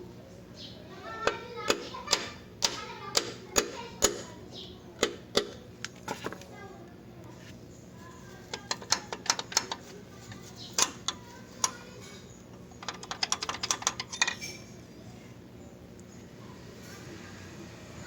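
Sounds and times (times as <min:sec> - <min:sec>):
small hard parts clicking: 0:01.2 - 0:04.3, 0:08.4 - 0:14.7.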